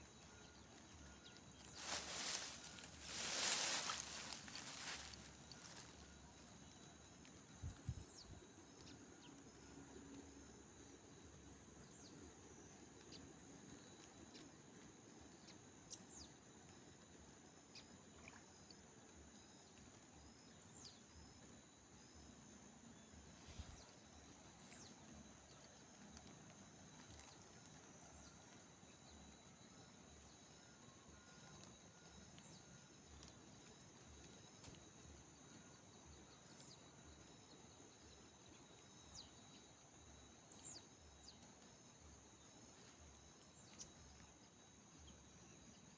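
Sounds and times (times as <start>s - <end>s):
insects trilling: 0.1s - 8.8s
short insect chirp: 1.0s - 6.7s.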